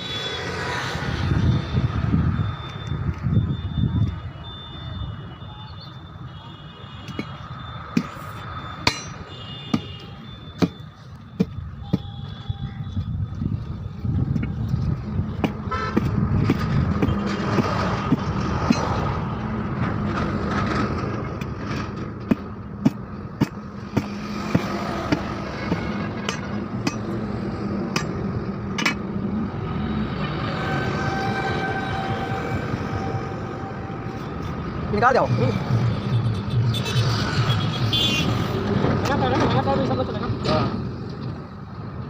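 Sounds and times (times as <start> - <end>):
steady engine hum: 6.9 - 42.0
horn-like tones: 29.7 - 34.6.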